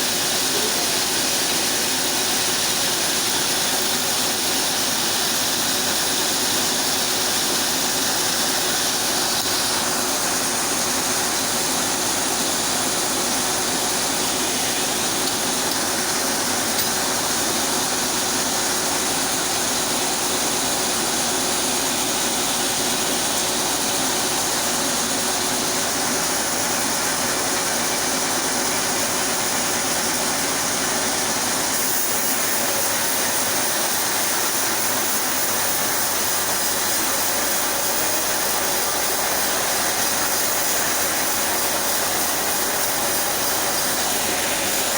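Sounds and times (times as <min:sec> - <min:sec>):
chainsaw cutting log: 0:00.0 - 0:44.9.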